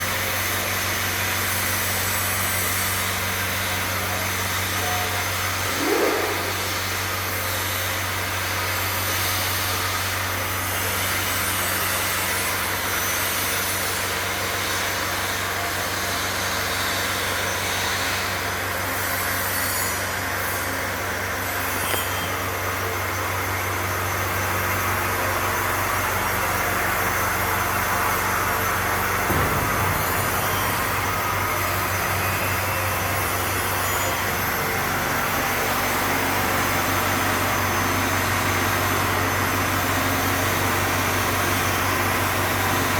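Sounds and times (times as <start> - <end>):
brief sweeping sound: 5.6 - 7.2
electric hum: 5.6 - 7.3.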